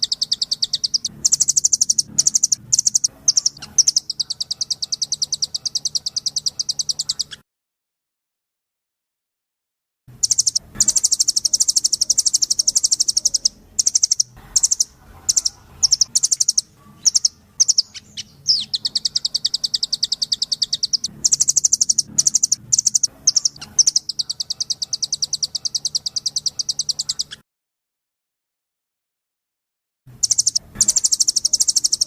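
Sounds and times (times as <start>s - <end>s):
bird trilling high notes: 0.0s - 7.4s, 10.2s - 27.4s.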